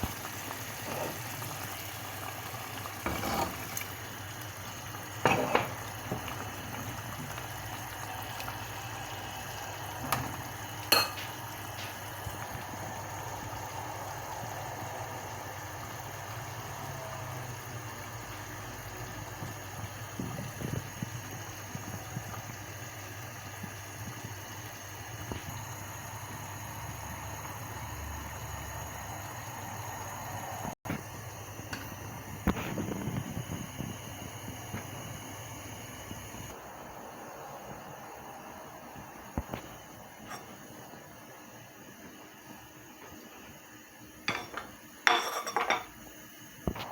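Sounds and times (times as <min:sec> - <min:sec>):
pot of food bubbling: 0:00.0 - 0:36.7.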